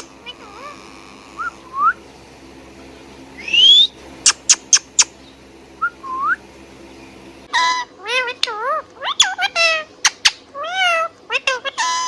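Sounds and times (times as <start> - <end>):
parakeet chirping: 0.0 - 0.8, 2.9 - 8.4, 9.0 - 12.0
parakeet whistling: 0.0 - 0.8, 1.4 - 2.0, 3.4 - 5.2, 5.8 - 6.4, 9.0 - 10.4.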